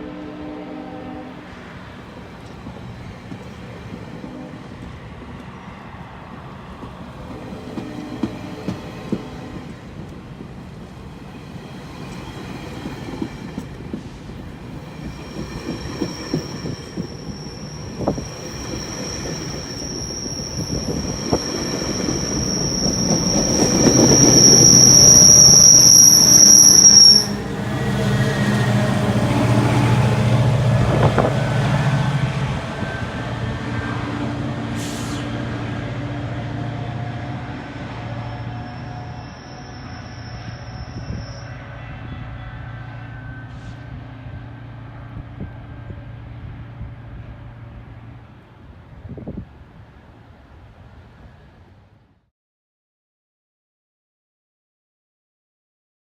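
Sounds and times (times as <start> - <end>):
train high-pitched squeal: 14.7 - 28.6, 32.8 - 35.8, 36.7 - 46.2.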